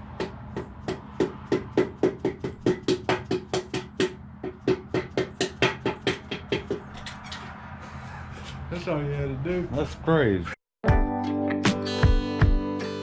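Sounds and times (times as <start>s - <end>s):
rapid tapping on a piston: 0.1s - 6.8s.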